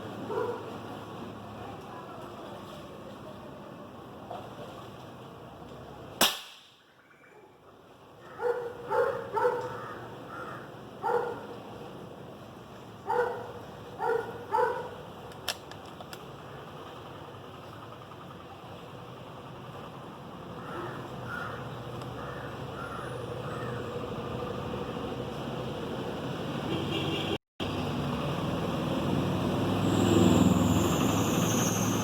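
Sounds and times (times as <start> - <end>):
air rifle shot: 6.2 - 6.8
crow cawing: 9.7 - 10.8, 20.6 - 23.8.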